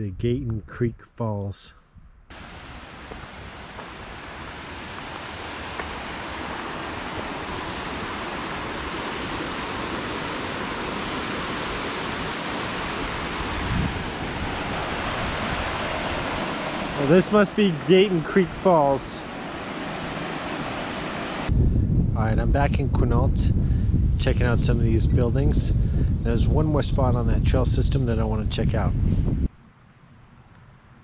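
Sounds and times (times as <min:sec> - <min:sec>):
waterfall rushing: 0:02.3 - 0:21.5.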